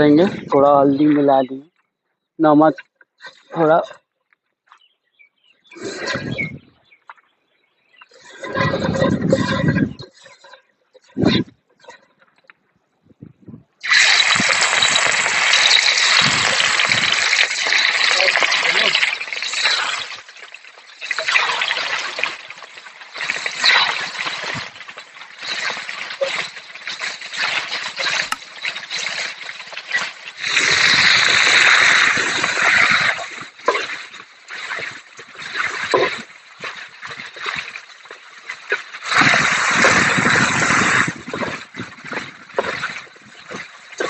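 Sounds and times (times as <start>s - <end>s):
prawns sizzling in hot oil: 13.8s - 44.0s.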